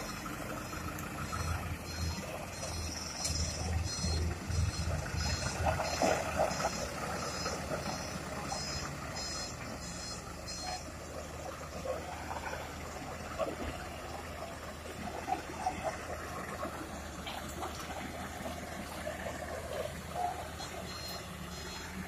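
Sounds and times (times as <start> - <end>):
backup alarm beeping: 0.0 - 11.0, 20.2 - 22.0
diesel engine rumble: 0.0 - 22.0.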